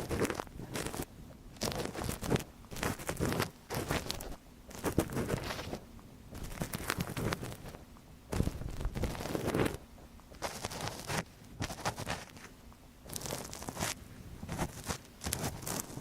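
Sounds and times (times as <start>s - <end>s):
crinkly scratching on microphone: 0.0s - 16.0s.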